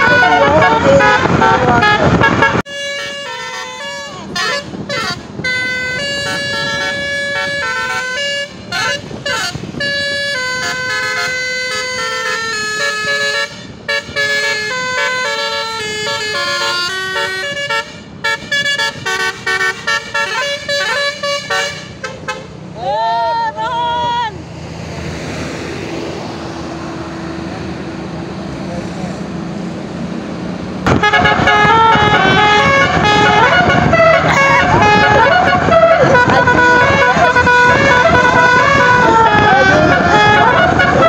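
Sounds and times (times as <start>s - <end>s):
musical bus horn playing a tune: 0.0s - 22.7s, 30.9s - 41.0s.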